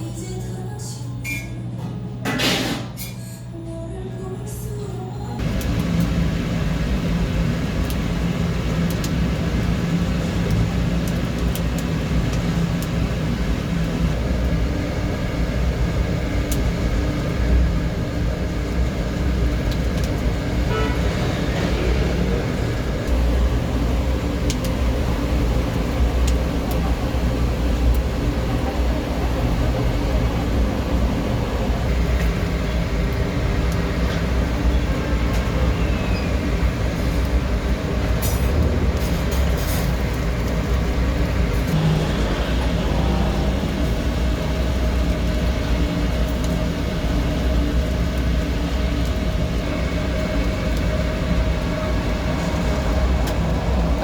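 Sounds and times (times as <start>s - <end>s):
low machine hum and rumble: 0.0s - 54.0s
machine humming: 18.0s - 35.2s, 36.5s - 46.1s.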